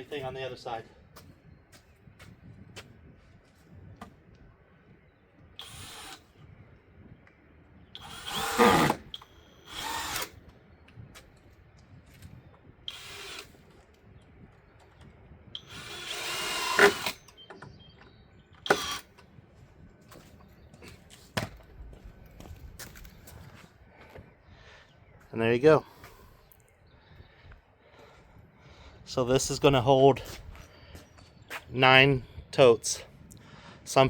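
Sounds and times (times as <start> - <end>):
power drill driving screws into wood: 5.6 - 6.3, 8.0 - 10.4, 12.9 - 13.5, 15.6 - 17.3, 18.6 - 19.2.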